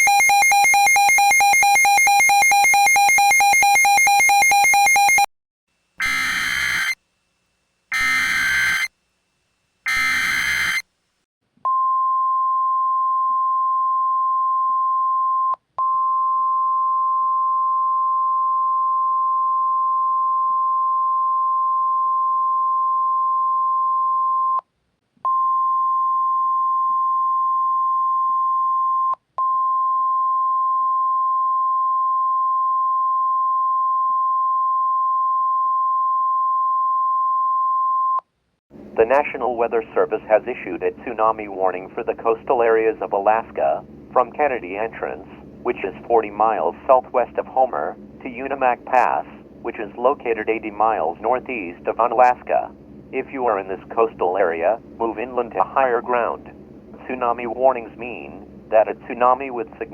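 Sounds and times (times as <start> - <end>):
single-pitch warning alarm tone: 0.0 - 5.3, 6.0 - 7.0, 7.9 - 8.9, 9.9 - 10.8
buzzy electronic alert tone: 6.0 - 7.0, 7.9 - 8.9, 9.9 - 10.8
screeching data bursts: 6.0 - 7.0, 9.9 - 10.8.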